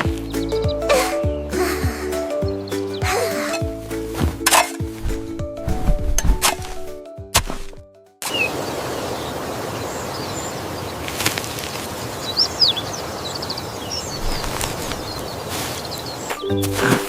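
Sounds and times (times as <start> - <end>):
bird chirps: 0.0 - 6.9, 8.2 - 17.0
music: 0.0 - 8.2, 16.4 - 17.0.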